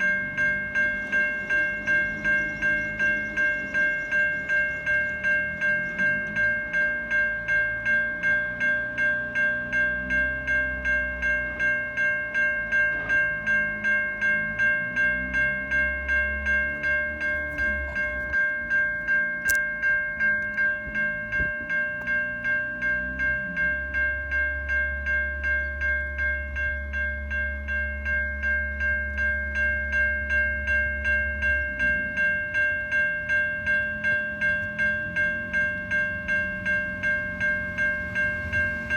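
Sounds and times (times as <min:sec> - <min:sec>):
level crossing bells dinging: 0:00.0 - 0:38.9
train passing rumble: 0:00.0 - 0:38.9.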